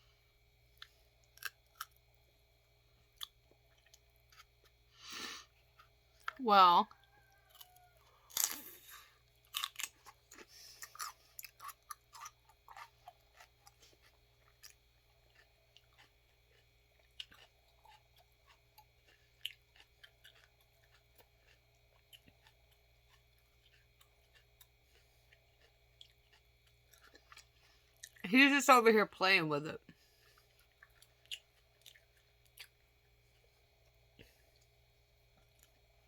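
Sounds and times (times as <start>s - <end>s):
dog crunching celery: 9.4s - 16.6s.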